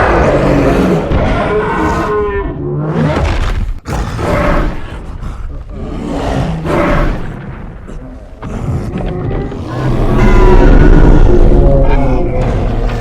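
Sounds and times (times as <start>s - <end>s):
gorilla roars and growls: 0.0s - 13.0s.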